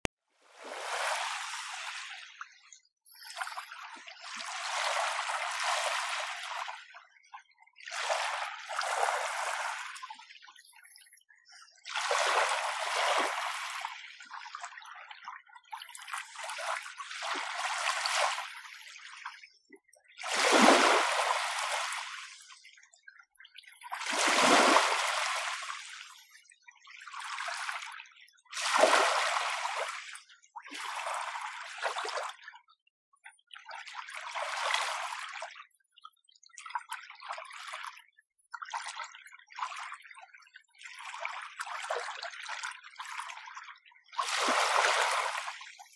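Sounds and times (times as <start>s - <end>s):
gentle sea waves washing ashore: 0.5s - 2.2s, 20.3s - 22.4s, 44.2s - 45.6s.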